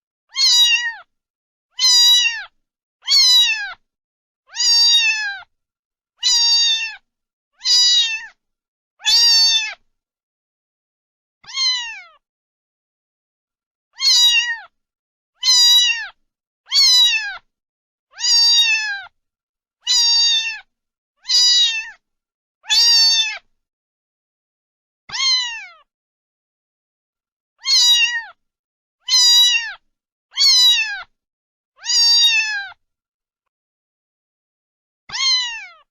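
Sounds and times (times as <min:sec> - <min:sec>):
cat meowing: 0:00.3 - 0:01.1, 0:01.7 - 0:03.8, 0:04.5 - 0:05.5, 0:06.2 - 0:07.0, 0:07.6 - 0:08.4, 0:09.0 - 0:09.8, 0:11.4 - 0:12.2, 0:14.0 - 0:14.8, 0:15.4 - 0:17.5, 0:18.1 - 0:19.2, 0:19.8 - 0:22.0, 0:22.6 - 0:23.5, 0:25.1 - 0:25.9, 0:27.6 - 0:28.4, 0:29.0 - 0:29.8, 0:30.4 - 0:31.1, 0:31.8 - 0:32.8, 0:35.1 - 0:35.9.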